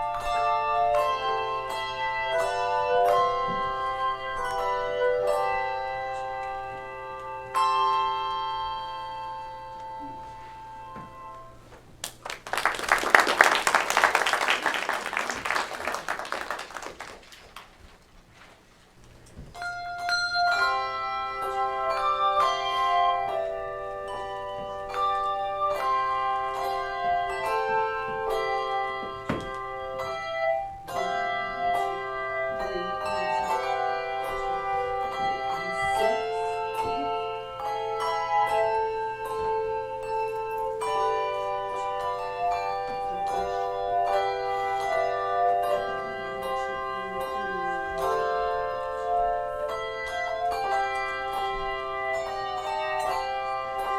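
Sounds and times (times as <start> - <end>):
handbell choir playing chords: 0.0 - 11.6, 19.6 - 53.9
audience applauding: 12.0 - 17.9.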